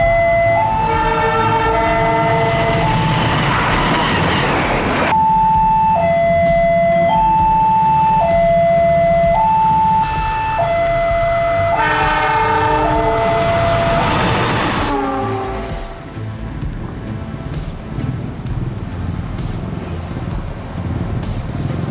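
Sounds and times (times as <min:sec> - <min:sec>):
train horn: 0:00.0 - 0:05.1, 0:09.9 - 0:16.2
two-tone warning signal: 0:00.0 - 0:16.0
train rushing past: 0:00.0 - 0:21.9.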